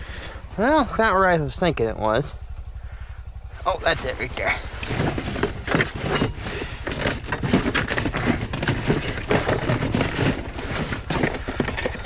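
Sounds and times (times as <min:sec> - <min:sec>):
low engine hum: 0:00.0 - 0:12.0
objects knocking and crackling: 0:03.9 - 0:12.0.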